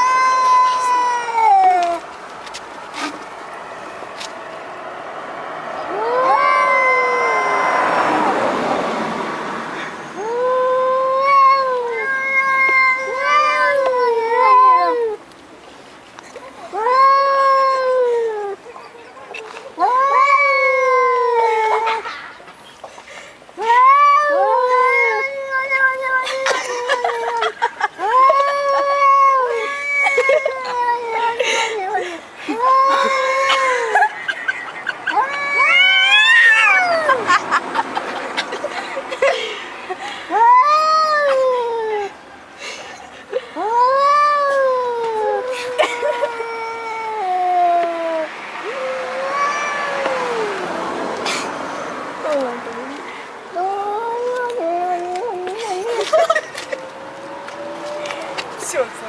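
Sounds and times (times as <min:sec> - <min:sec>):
cat meowing: 0:00.0 - 0:02.0, 0:05.9 - 0:08.1, 0:10.2 - 0:15.2, 0:16.7 - 0:22.0, 0:23.6 - 0:32.0, 0:32.6 - 0:33.6, 0:35.0 - 0:37.2, 0:43.6 - 0:50.7, 0:53.5 - 0:56.1.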